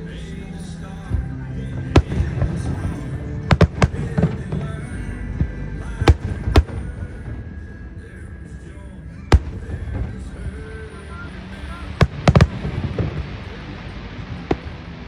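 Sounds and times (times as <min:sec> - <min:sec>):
background music: 0:00.0 - 0:15.0
fireworks bangs: 0:01.7 - 0:05.1, 0:06.0 - 0:07.5, 0:09.3 - 0:10.9, 0:11.6 - 0:15.0.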